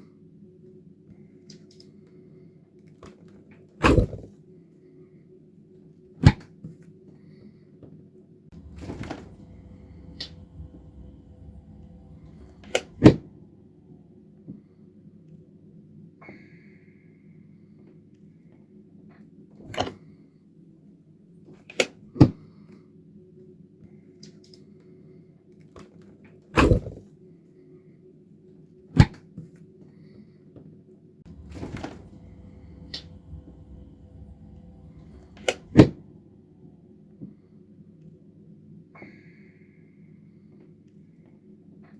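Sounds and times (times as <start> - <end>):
low steady hum: 8.5 - 14.8, 31.3 - 38.0.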